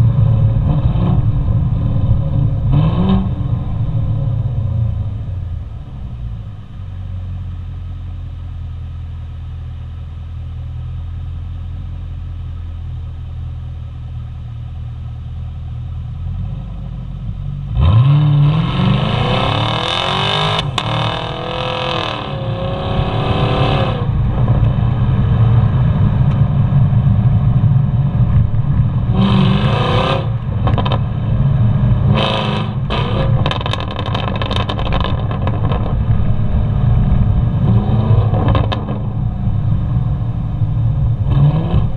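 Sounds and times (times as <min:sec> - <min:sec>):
car engine rumbling and accelerating: 0:00.0 - 0:41.9
exhaust pops and crackles: 0:30.4 - 0:31.1, 0:33.2 - 0:36.4, 0:38.3 - 0:39.2.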